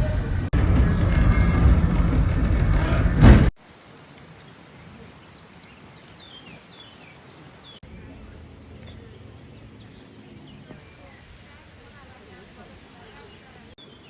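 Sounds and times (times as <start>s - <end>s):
loud train running: 0.0s - 3.5s.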